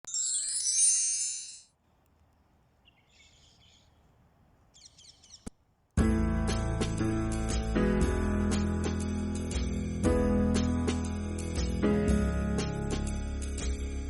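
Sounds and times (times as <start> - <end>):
bright high-pitched tone: 0.0 - 1.7
faint bird chirps: 1.9 - 5.5
acoustic guitar music: 6.0 - 13.8.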